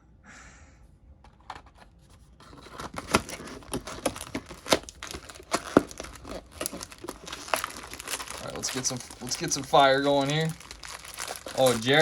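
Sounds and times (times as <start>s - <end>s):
card pack wrappers crinkling and tearing: 2.4s - 12.0s.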